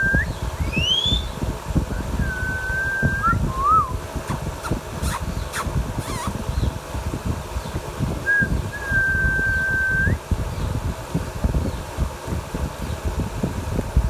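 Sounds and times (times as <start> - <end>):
parakeet whistling: 0.0 - 1.4, 2.2 - 6.4.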